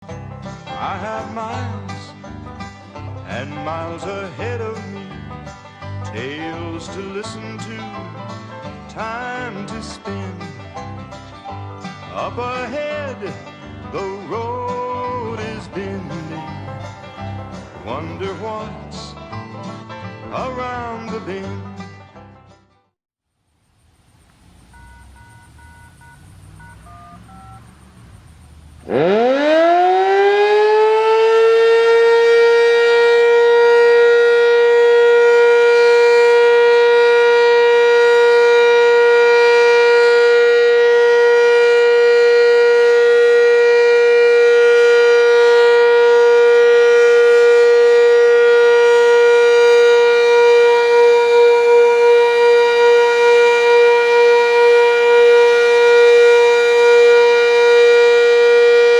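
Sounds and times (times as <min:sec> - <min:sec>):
warning siren winding up: 0:24.5 - 0:58.9
faint short beeps: 0:24.7 - 0:27.7.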